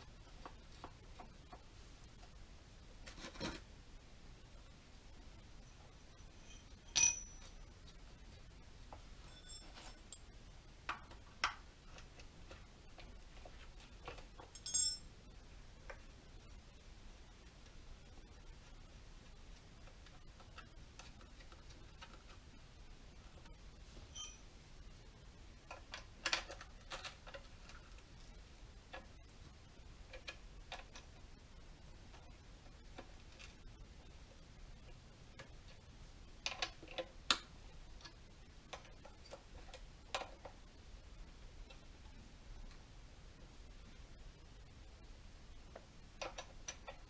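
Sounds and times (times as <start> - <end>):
metallic clicks and clinks: 6.2 - 7.6, 9.2 - 10.3, 14.4 - 15.1, 24.1 - 24.5.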